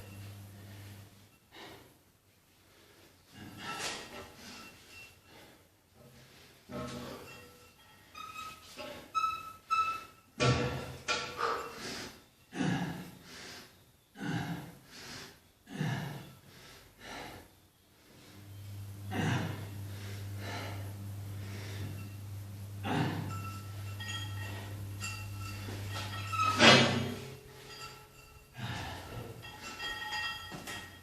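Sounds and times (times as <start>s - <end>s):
steady low hum: 0.0s - 2.0s, 15.6s - 31.0s.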